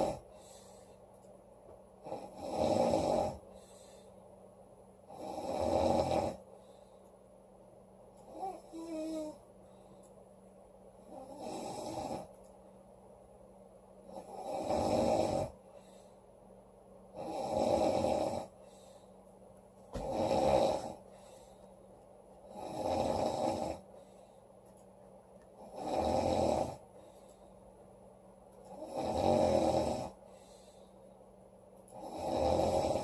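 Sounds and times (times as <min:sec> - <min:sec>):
woman snoring loudly: 0:00.0 - 0:00.3, 0:02.0 - 0:03.4, 0:05.1 - 0:06.4, 0:08.3 - 0:09.4, 0:11.1 - 0:12.3, 0:14.1 - 0:15.6, 0:17.2 - 0:18.6, 0:20.0 - 0:21.0, 0:22.5 - 0:23.8, 0:25.6 - 0:26.8, 0:28.7 - 0:30.2, 0:32.0 - 0:33.0.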